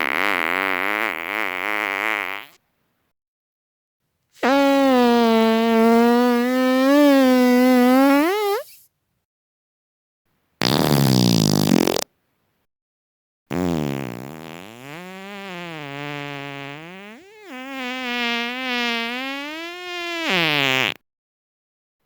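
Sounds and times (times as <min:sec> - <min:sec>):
farts: 0:00.0 - 0:02.6, 0:04.4 - 0:08.9, 0:10.6 - 0:12.1, 0:13.5 - 0:21.0.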